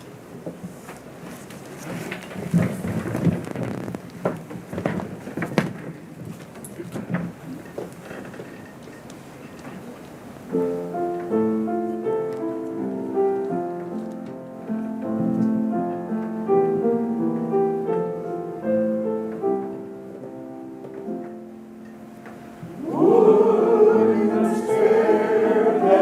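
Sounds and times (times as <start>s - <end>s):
piano playing: 10.4s - 26.0s.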